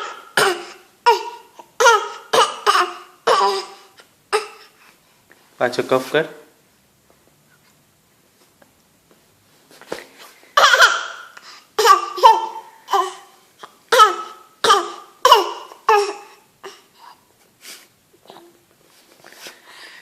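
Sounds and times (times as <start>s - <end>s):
small child coughing: 0.0s - 4.6s, 10.6s - 16.9s.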